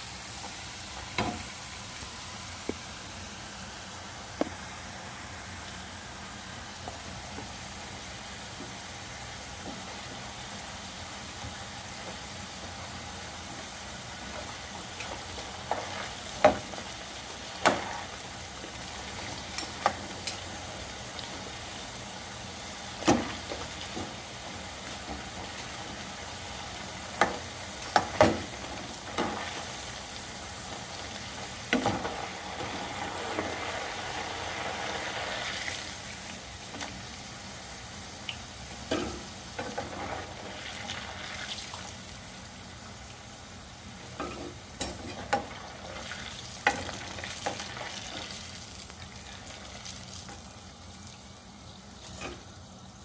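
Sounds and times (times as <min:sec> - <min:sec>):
fries sizzling in hot oil: 0:00.0 - 0:53.0.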